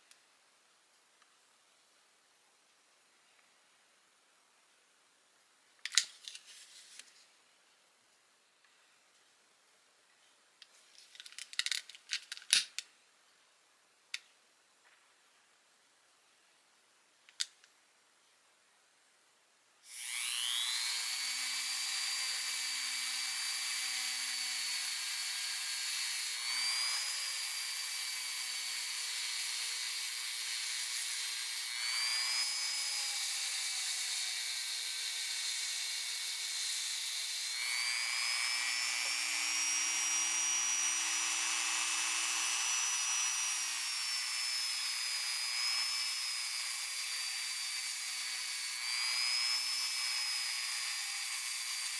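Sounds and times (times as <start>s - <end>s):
click: 17.3s - 17.8s
power tool high whine: 19.9s - 51.9s.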